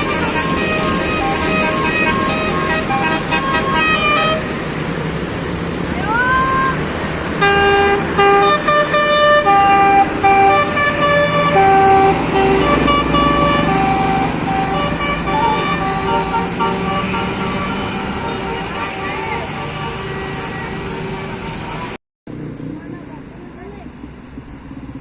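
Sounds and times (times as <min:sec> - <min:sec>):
musical bus horn melody: 0:00.0 - 0:05.0, 0:07.4 - 0:22.0
engine noise: 0:00.0 - 0:25.0.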